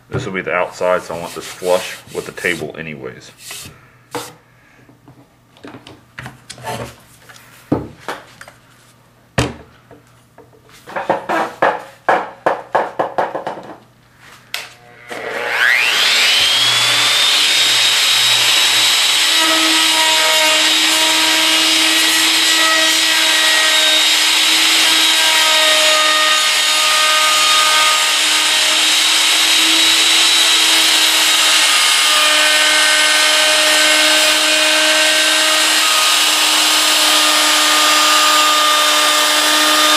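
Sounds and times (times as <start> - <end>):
router motor whining: 14.8 - 39.9.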